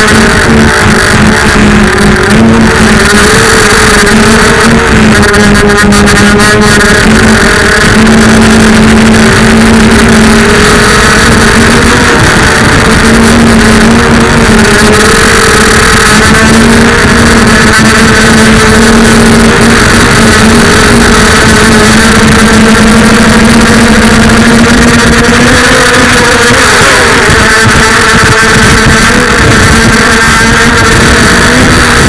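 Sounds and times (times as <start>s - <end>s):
quadcopter motors buzzing: 0.0s - 32.0s.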